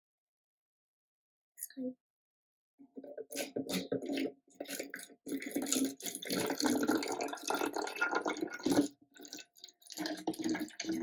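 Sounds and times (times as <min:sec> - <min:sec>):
liquid pouring into plastic bottle: 0:03.0 - 0:11.0
liquid splashing and gurgling: 0:03.2 - 0:11.0.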